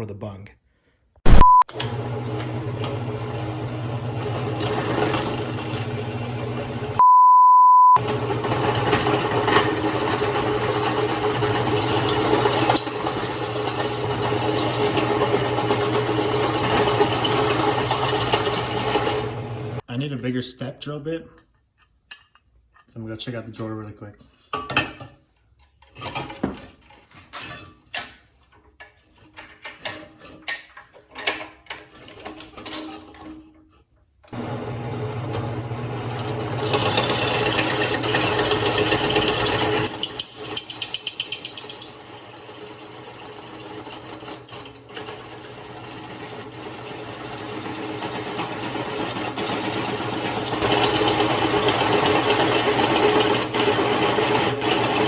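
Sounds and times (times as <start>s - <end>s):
drill press drilling steel: 1.3s - 7.0s, 8.0s - 19.8s, 34.4s - 55.0s.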